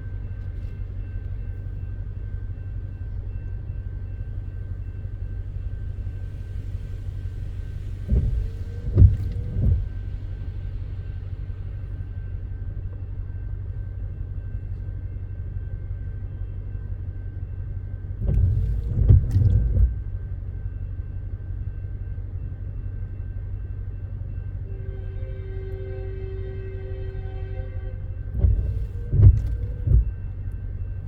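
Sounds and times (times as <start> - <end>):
train rumbling past: 0.0 - 31.0
train knocks and thumps: 7.9 - 11.4, 18.2 - 20.8, 28.3 - 31.0.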